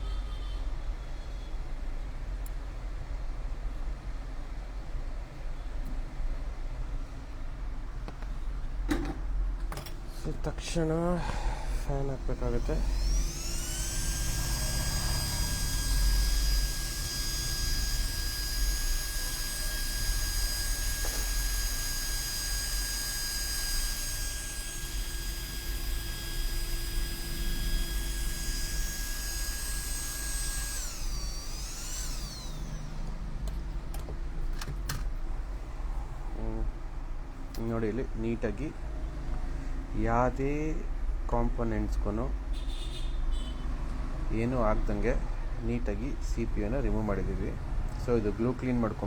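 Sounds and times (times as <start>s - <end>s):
electric cooling fan whining: 7.0s - 39.0s.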